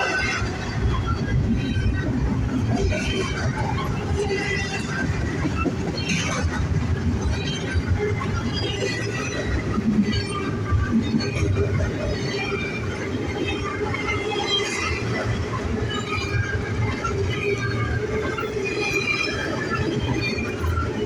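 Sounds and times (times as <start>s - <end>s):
freight train wheels rumbling: 0.0s - 21.0s
high-pitched wheel squeals: 13.6s - 21.0s.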